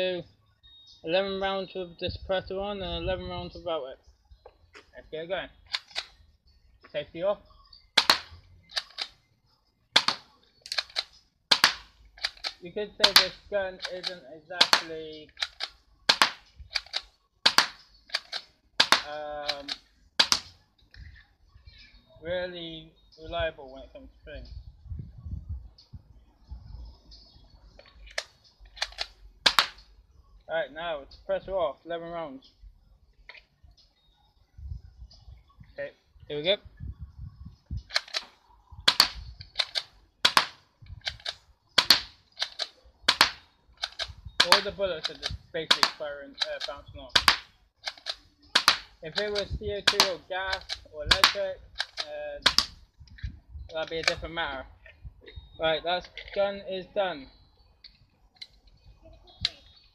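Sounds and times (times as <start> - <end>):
airsoft gun shots clicking: 8.0 - 9.1, 10.0 - 20.5, 28.2 - 29.8, 38.9 - 52.8.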